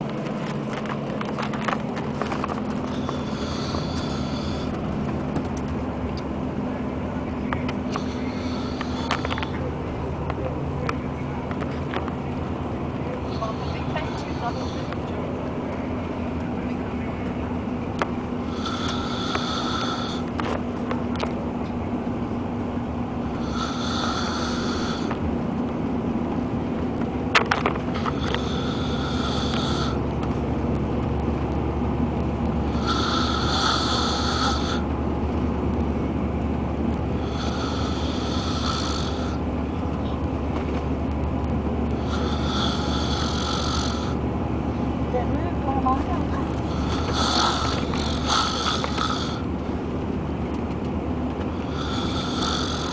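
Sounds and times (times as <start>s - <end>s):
steady low rumble: 0.0s - 52.9s
person snoring: 3.0s - 4.7s, 8.0s - 9.5s, 18.5s - 20.3s, 23.4s - 25.1s, 28.1s - 30.0s, 32.7s - 34.8s, 37.2s - 39.4s, 42.0s - 44.2s, 46.7s - 49.5s, 51.6s - 52.9s.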